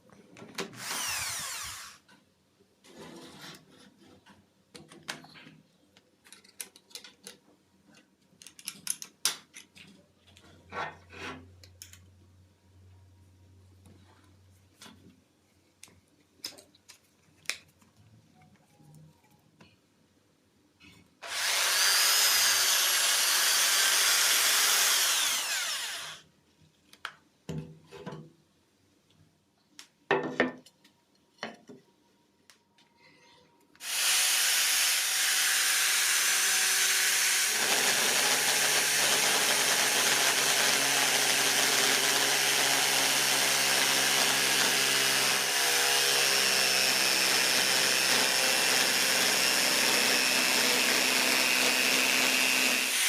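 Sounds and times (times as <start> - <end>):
electric drill running: 0.8 - 2.0, 21.2 - 26.2, 33.8 - 53.0.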